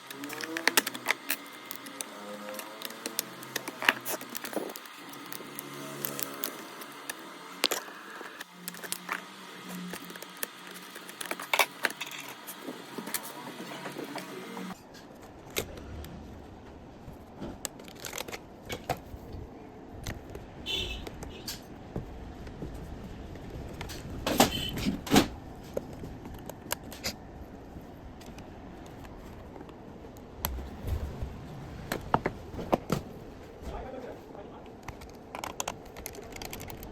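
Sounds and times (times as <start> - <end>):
clicks and rattles of handled parts: 0.0 - 9.2, 9.9 - 15.8, 34.6 - 36.9.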